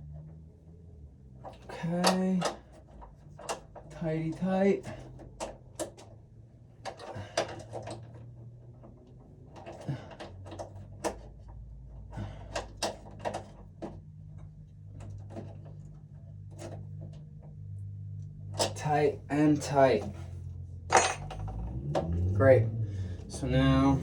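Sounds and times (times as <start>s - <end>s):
steady low hum: 0.0s - 24.0s
hand tools clicking and knocking: 1.4s - 6.2s, 6.8s - 15.9s, 18.6s - 20.3s, 20.9s - 22.1s.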